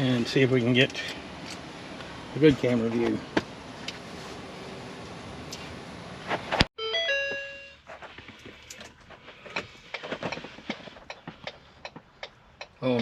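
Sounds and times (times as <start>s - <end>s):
electronic chime: 6.8s - 7.9s.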